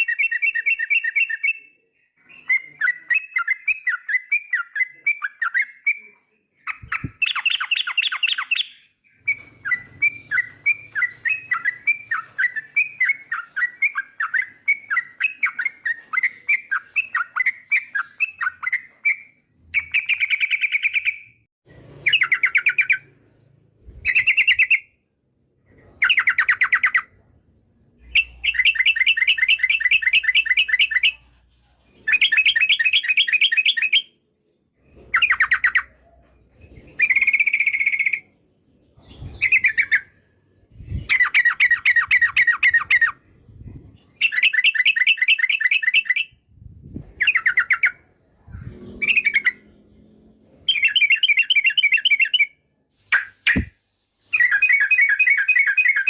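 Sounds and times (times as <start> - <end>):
bulbul chattering song: 0.0 - 21.4, 22.0 - 25.0, 25.8 - 31.4, 32.0 - 34.2, 39.1 - 46.5, 47.1 - 56.0.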